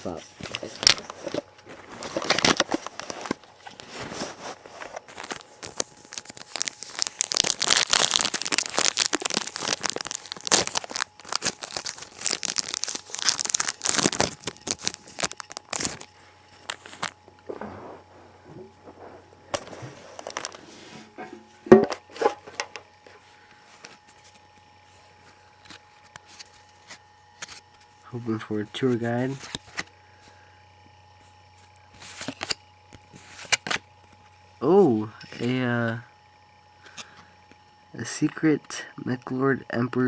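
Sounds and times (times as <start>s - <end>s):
foil wrappers crinkling and tearing: 0.0s - 20.8s, 31.6s - 33.8s.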